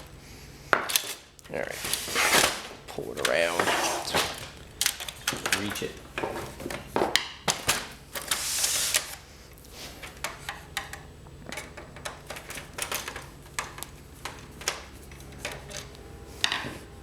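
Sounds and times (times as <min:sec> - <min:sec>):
scraping rustle: 0:01.6 - 0:04.6
printer parts clicking and rattling: 0:02.9 - 0:08.4, 0:10.0 - 0:16.7.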